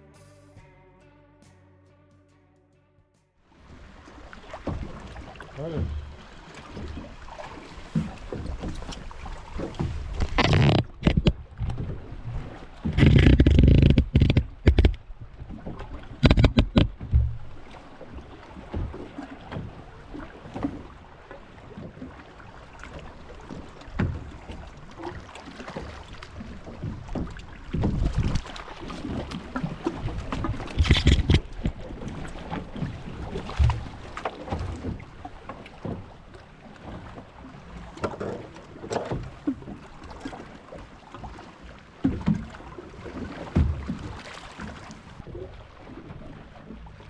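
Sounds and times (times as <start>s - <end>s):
water: 3.4s - 47.0s
boat background noise: 3.5s - 47.0s
low wind: 3.6s - 42.8s
wind on microphone: 7.8s - 17.6s, 26.8s - 35.0s
handling knocks and clicks: 10.2s - 11.4s, 13.0s - 15.0s, 16.2s - 17.4s, 30.7s - 31.8s.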